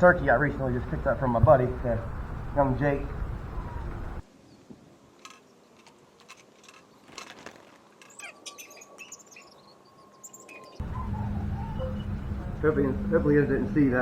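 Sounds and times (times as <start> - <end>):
small bird chirping: 8.0 - 12.7.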